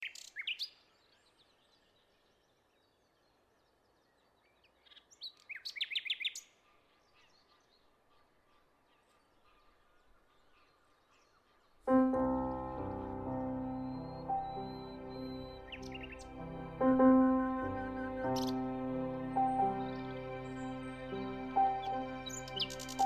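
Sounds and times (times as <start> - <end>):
faint bird chirps: 0.0 - 23.0
songbird singing fast notes: 12.0 - 23.0.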